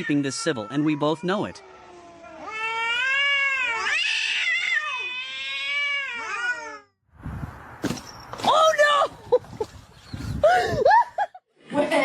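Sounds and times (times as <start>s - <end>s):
cat yowling: 0.0s - 6.8s.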